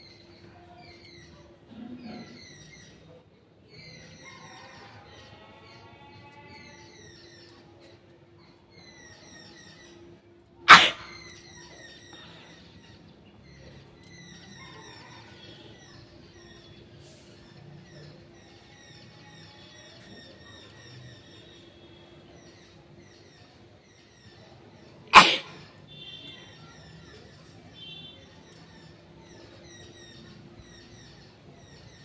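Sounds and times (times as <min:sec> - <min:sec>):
person sneezing: 0:10.7 - 0:11.2, 0:25.2 - 0:25.6
birds chirping: 0:10.7 - 0:15.2.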